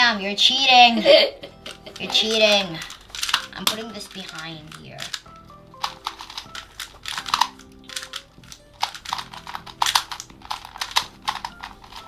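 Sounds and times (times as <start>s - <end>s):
puzzle cube clicking as turned: 1.5s - 12.0s.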